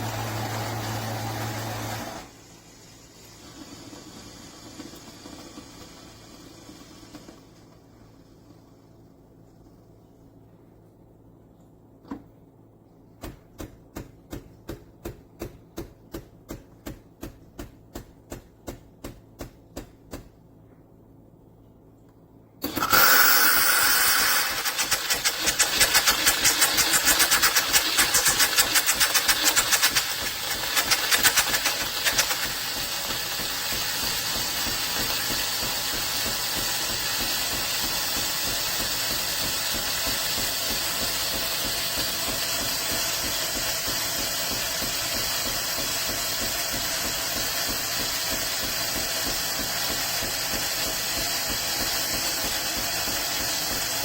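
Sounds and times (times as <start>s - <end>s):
espresso machine hissing: 0.0s - 8.8s, 22.6s - 54.0s.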